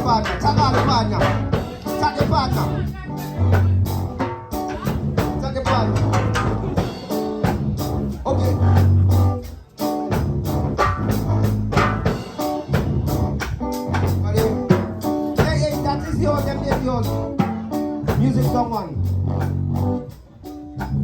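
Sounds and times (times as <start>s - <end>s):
person singing: 0.0s - 9.8s
music with drums and guitar: 0.0s - 21.0s.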